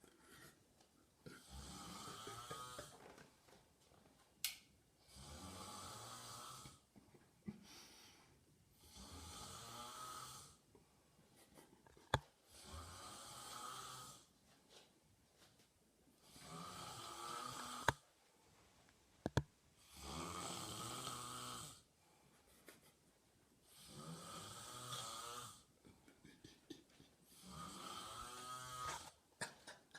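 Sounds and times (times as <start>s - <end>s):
man snoring: 1.3s - 3.0s, 5.0s - 6.8s, 8.8s - 10.6s, 12.5s - 14.3s, 16.2s - 18.0s, 19.8s - 21.9s, 23.7s - 25.7s, 27.3s - 29.2s.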